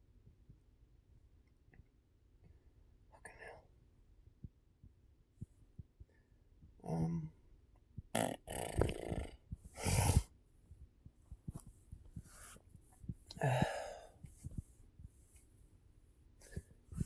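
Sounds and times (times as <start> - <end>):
man breathing and gasping: 9.6 - 10.3, 12.3 - 14.7.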